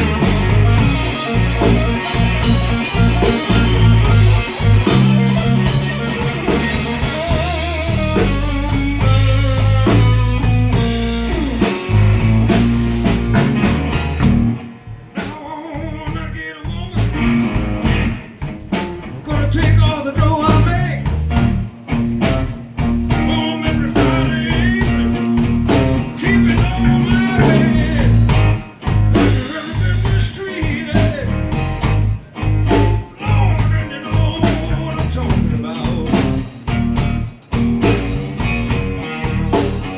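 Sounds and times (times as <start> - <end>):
person singing: 0.0 - 10.2, 15.2 - 17.2, 23.2 - 31.6, 32.7 - 36.5
bass guitar: 0.0 - 39.9
blues-rock band playing: 0.0 - 39.9
drums: 0.0 - 39.9
electric guitar: 0.0 - 39.9.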